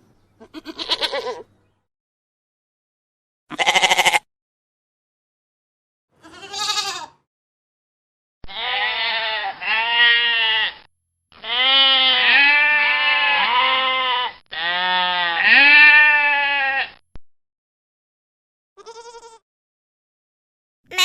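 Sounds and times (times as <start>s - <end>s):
goat bleating: 0.4s - 1.5s, 3.5s - 4.3s, 6.2s - 7.2s, 8.4s - 17.0s, 18.8s - 19.4s.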